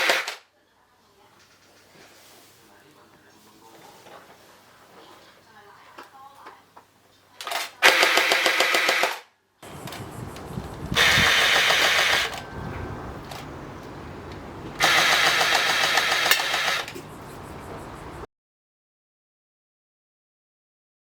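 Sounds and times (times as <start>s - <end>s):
toy blaster motor whirring: 7.9s - 12.5s, 14.8s - 17.0s
low continuous hum: 9.5s - 18.3s.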